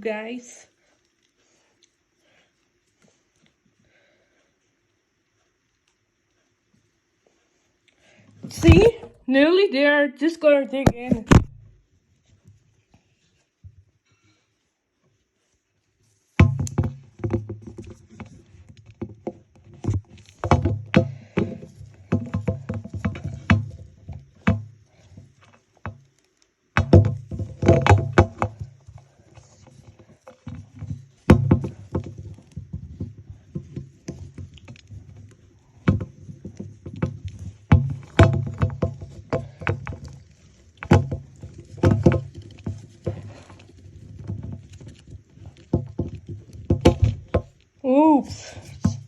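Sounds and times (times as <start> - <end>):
hands rustling and scraping doll: 10.9 - 49.0
plastic taps and knocks: 45.6 - 47.6.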